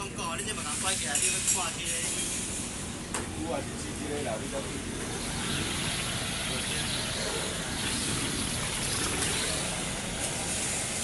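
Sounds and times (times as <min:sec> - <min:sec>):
gas torch flame hissing: 0:05.0 - 0:11.0.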